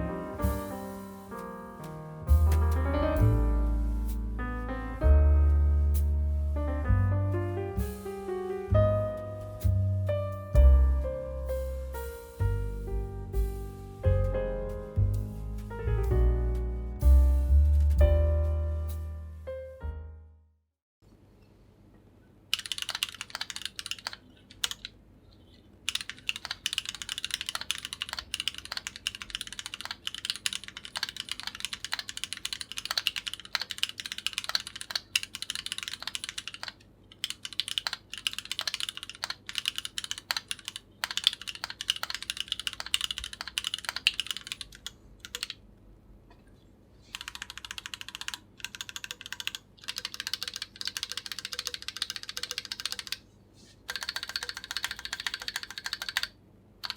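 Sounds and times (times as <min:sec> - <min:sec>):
mechanical keyboard typing: 0:22.5 - 0:25.0, 0:25.8 - 0:45.6, 0:47.1 - 0:53.2, 0:53.9 - 0:56.9.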